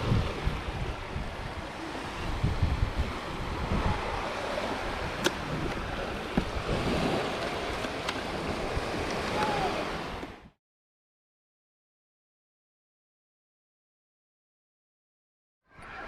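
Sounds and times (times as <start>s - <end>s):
ocean waves breaking: 0.0s - 10.6s
wind buffeting microphone: 0.0s - 10.6s.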